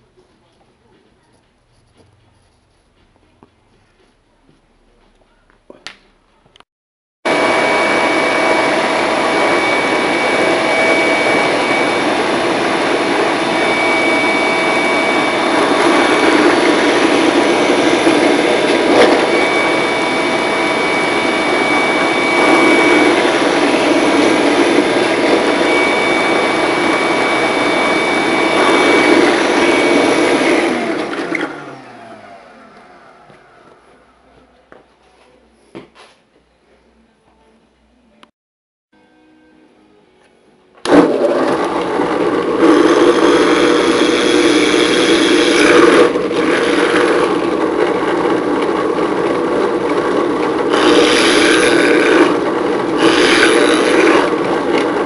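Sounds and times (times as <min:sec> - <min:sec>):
power tool motor whine: 0:07.3 - 0:33.8, 0:40.8 - 0:55.0.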